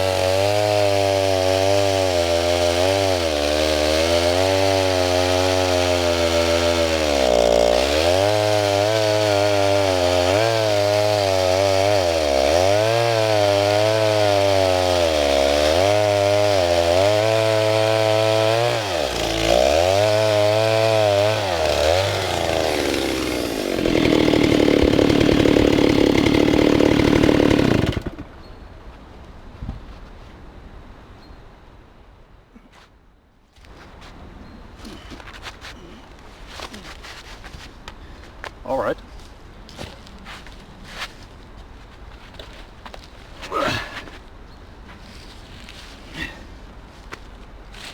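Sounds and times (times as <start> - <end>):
chainsaw engine revving: 0.0 - 28.3.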